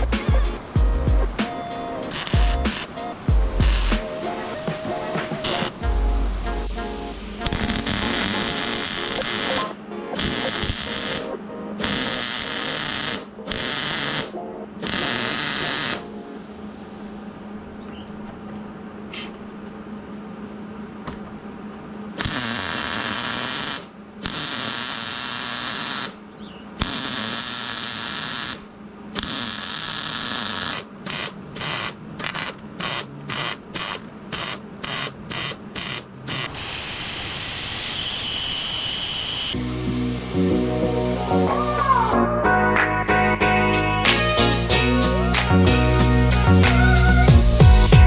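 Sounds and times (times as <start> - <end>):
welder crackling hiss: 0.0 - 5.9, 7.4 - 16.1, 22.2 - 26.2, 26.8 - 42.2.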